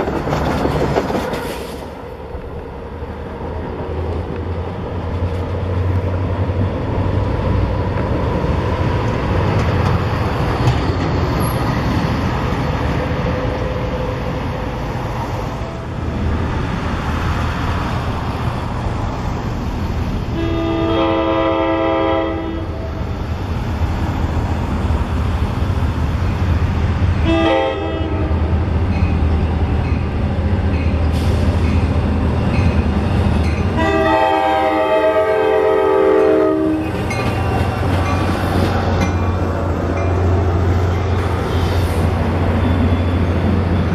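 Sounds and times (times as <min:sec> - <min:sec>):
train rumbling past: 0:00.0 - 0:43.9
train horn: 0:20.4 - 0:22.9, 0:27.2 - 0:28.4, 0:33.8 - 0:36.9.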